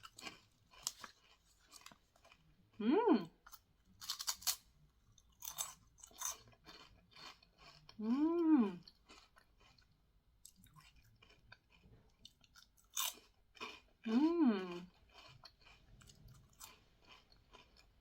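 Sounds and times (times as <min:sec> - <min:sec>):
potato crisp crunching: 0:00.0 - 0:02.7, 0:03.4 - 0:18.0
person humming mmm: 0:08.0 - 0:08.8, 0:14.1 - 0:14.9.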